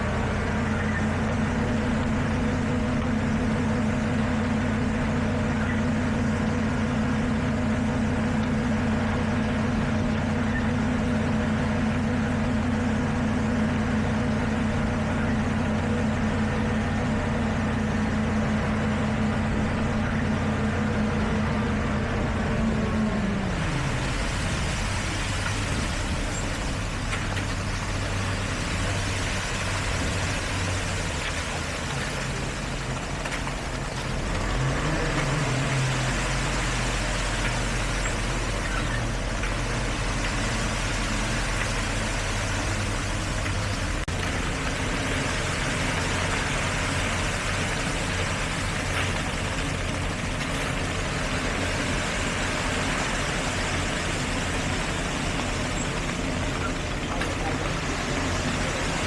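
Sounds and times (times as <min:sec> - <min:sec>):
heavy diesel engines running: 0:00.0 - 0:59.0.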